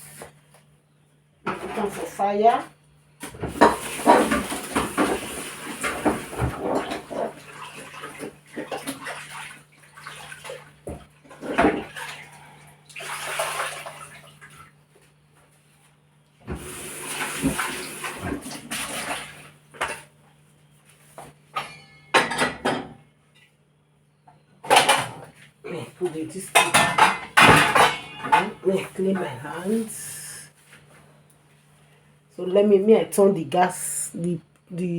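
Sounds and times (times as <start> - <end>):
tap water splashing: 3.3 - 12.2, 16.5 - 20.0
pot knocking against sink: 26.6 - 28.6.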